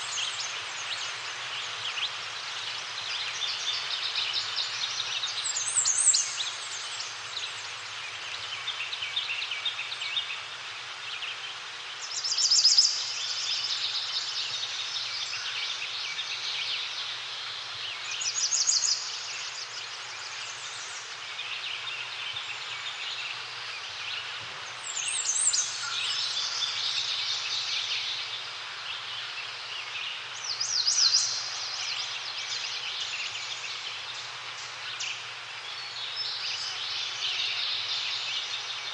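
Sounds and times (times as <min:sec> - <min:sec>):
bird singing loud high song: 0:00.0 - 0:38.9
chorus of bird chirps: 0:11.2 - 0:38.9.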